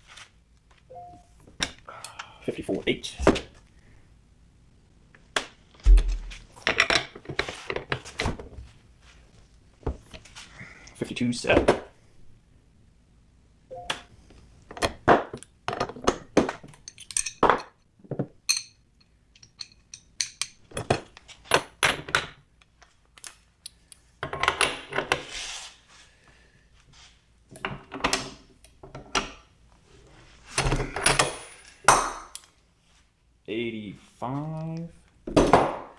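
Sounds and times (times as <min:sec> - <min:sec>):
metal tool parts clinking: 0:16.8 - 0:17.7, 0:18.5 - 0:21.0.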